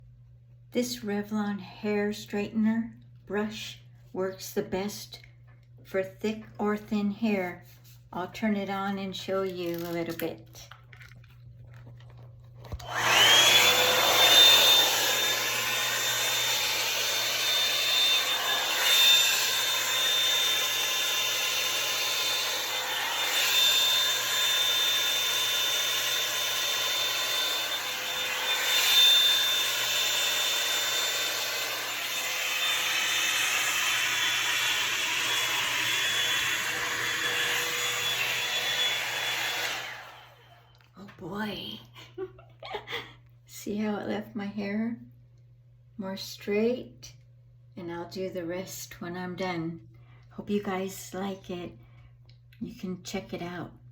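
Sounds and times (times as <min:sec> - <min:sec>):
hot-air brush motor whining: 0:12.7 - 0:40.8.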